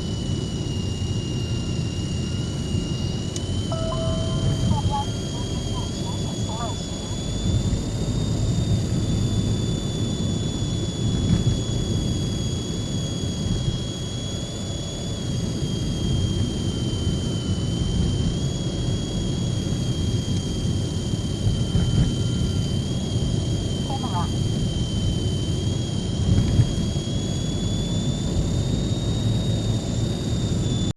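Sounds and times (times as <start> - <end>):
high-pitched air vent whistle: 2.0 - 7.0.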